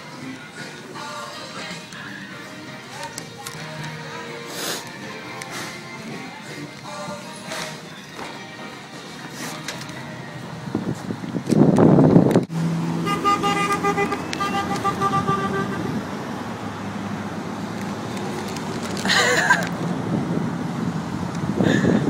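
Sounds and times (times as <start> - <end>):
road traffic: 0.0 - 22.0
vehicle rushing by: 10.6 - 19.0
car horn honking: 13.0 - 16.0.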